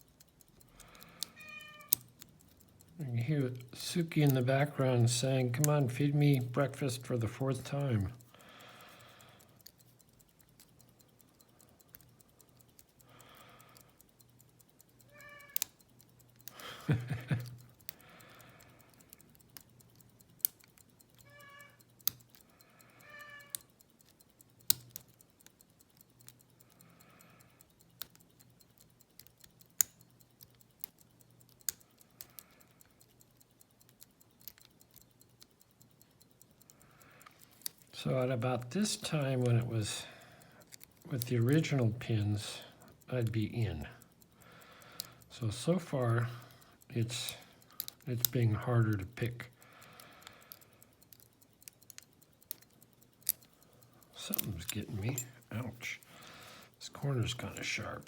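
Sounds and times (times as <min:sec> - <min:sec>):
lock picks clicking in a padlock: 0:00.0 - 0:08.2, 0:09.0 - 0:58.0
cat meowing: 0:01.4 - 0:01.9, 0:15.1 - 0:15.6, 0:21.3 - 0:21.8.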